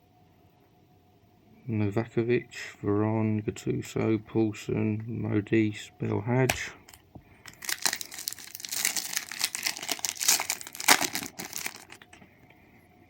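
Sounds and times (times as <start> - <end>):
foil wrapper crinkling: 7.5 - 12.2.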